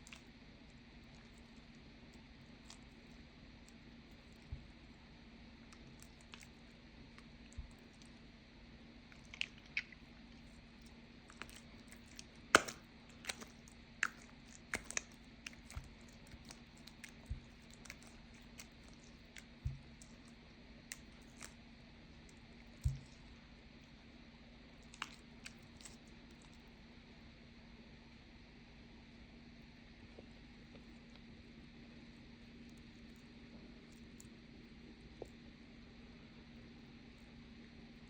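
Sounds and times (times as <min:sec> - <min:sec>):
faint steady hum: 0:00.0 - 0:38.0
slime clicks and wet pops: 0:11.3 - 0:21.6, 0:22.7 - 0:23.3, 0:24.8 - 0:26.0.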